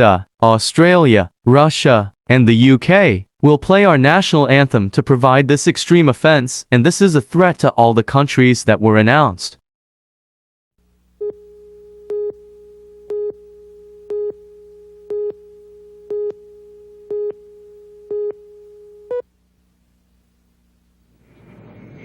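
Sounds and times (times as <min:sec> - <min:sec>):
steady hum: 0:10.8 - 0:21.6
short electronic beeps: 0:11.2 - 0:19.2.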